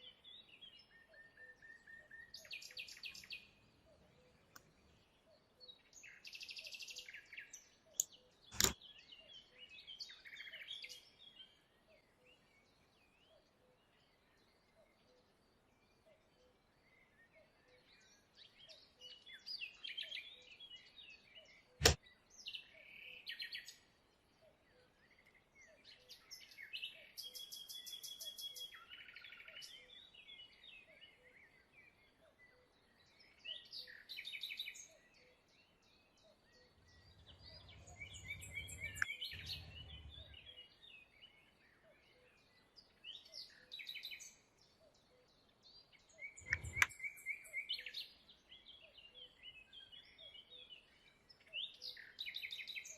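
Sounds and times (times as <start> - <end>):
small birds chirping: 0.0 - 52.9
sharp click: 8.0 - 8.8, 38.8 - 39.1, 46.4 - 46.9
low rumbling: 37.0 - 40.5.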